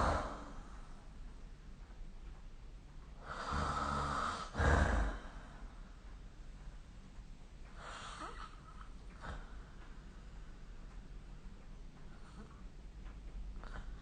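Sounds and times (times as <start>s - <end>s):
person snoring: 3.2s - 5.3s
loud snort: 3.3s - 5.2s.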